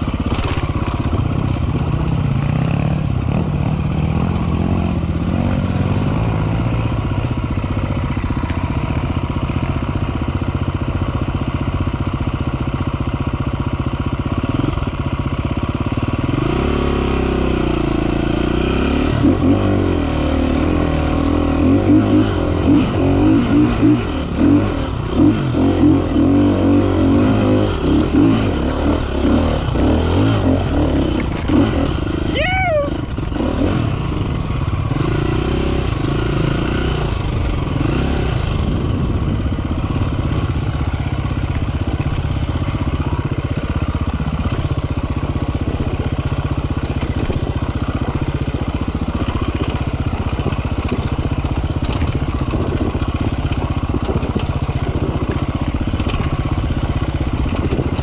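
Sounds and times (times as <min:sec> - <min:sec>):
dirt bike engine revving: 0:16.2 - 0:39.2.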